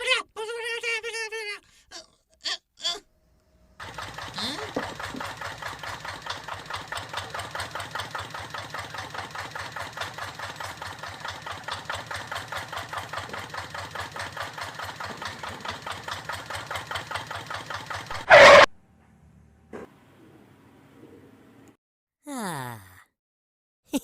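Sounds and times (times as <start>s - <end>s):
small engine idling: 3.2s - 18.7s.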